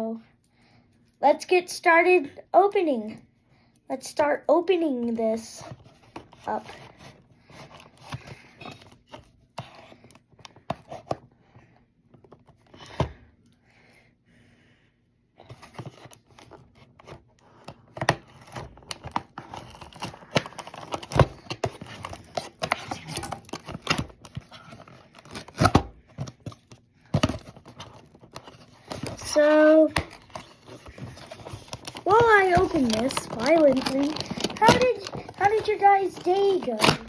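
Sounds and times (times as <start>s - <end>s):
packaging tearing and crinkling: 18.1s - 26.5s, 27.2s - 37.0s.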